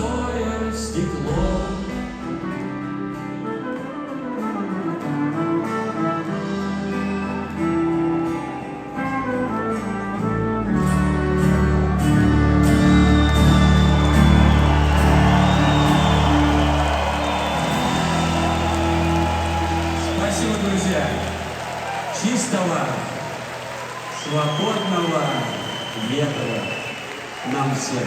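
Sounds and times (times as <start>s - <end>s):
live rock band playing: 1.0s - 22.0s.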